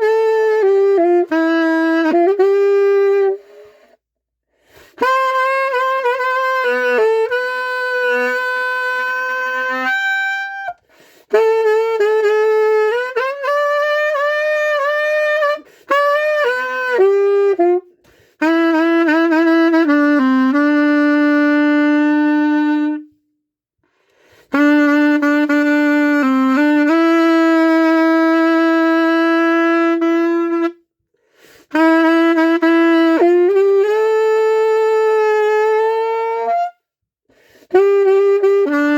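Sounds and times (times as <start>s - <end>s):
solo saxophone melody: 0.0s - 38.9s.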